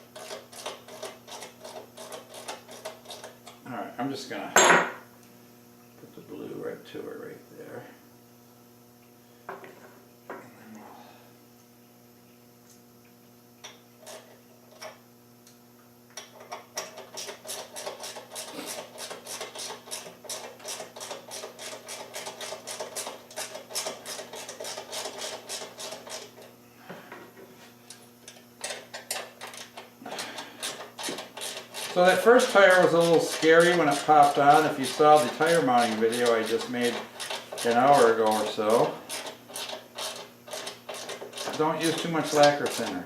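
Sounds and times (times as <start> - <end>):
faint steady hum: 0.0 - 43.0
hand ratchet clicking rapidly: 16.8 - 26.3, 30.6 - 43.0.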